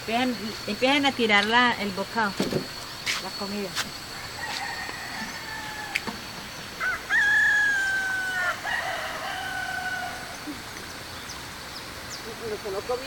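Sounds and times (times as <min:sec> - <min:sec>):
rooster crowing: 0:04.1 - 0:10.6.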